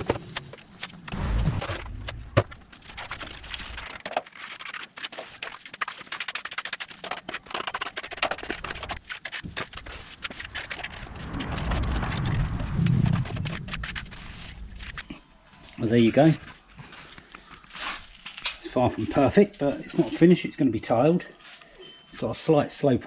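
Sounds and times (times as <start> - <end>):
trowel scraping concrete: 2.8 - 11.2
low rumble: 10.3 - 15.8.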